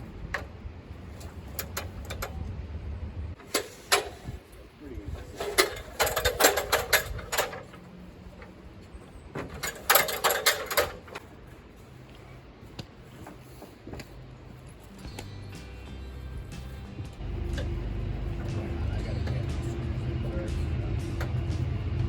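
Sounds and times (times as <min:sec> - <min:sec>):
rapid mechanical clicking and rattling: 0:00.0 - 0:02.5, 0:03.3 - 0:11.4.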